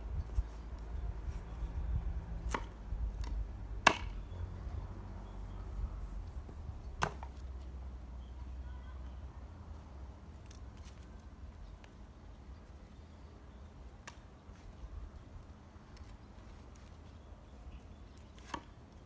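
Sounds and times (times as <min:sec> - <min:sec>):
firewood clicking and tapping: 0:02.5 - 0:04.2.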